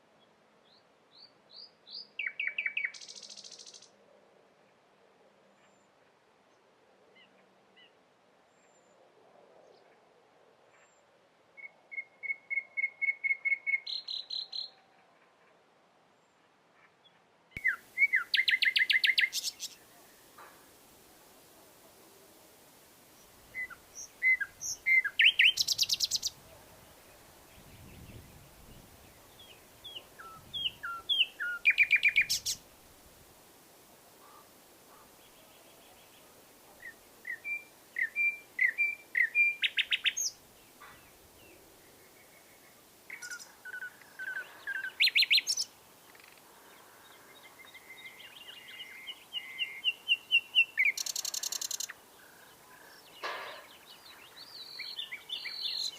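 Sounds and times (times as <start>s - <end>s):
nightingale singing: 0.7s - 3.9s, 11.6s - 14.9s, 17.5s - 20.5s, 23.1s - 32.7s, 34.2s - 46.4s, 47.3s - 55.9s.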